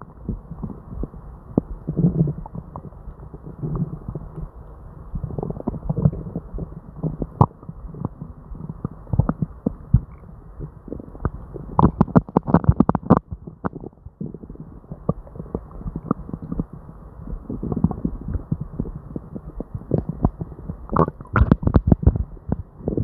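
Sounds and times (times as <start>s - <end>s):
stomach gurgling and rumbling: 0.0s - 23.0s.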